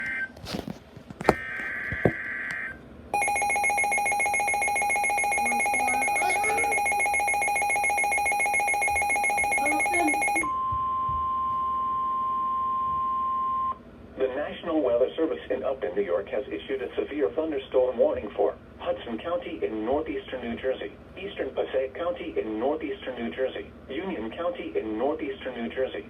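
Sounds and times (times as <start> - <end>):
pulsing electronic alarm: 3.2 - 11.3
steady pure warning tone: 3.2 - 13.8.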